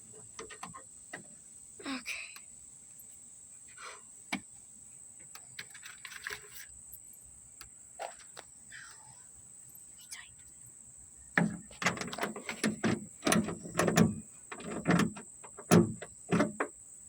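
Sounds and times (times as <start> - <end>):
hand tools clicking and scraping: 5.4 - 6.8.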